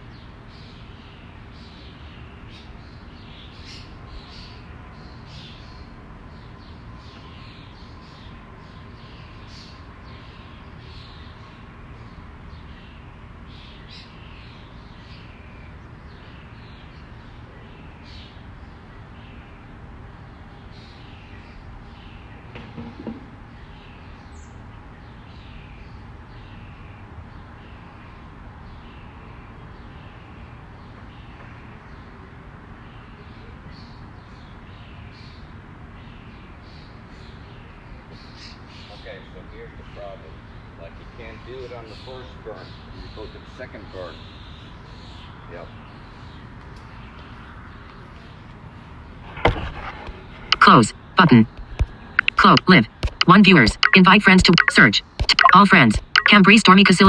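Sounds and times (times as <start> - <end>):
birds chirping: 32.8 - 57.0.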